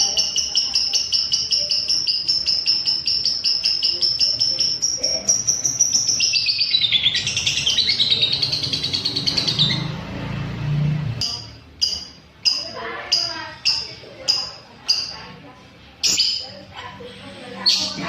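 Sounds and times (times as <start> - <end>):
lovebird shrill chattering song: 0.0 - 10.0, 16.0 - 16.6.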